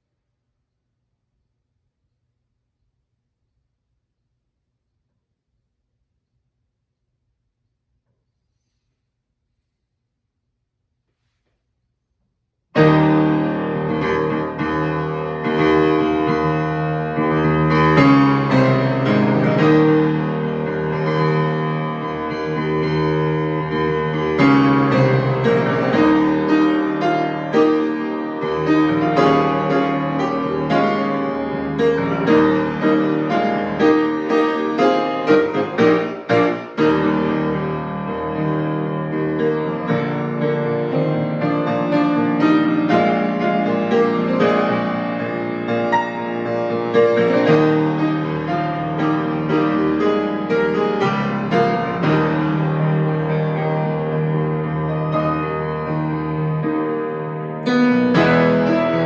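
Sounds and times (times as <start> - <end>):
solo piano hymn: 12.8 - 59.0.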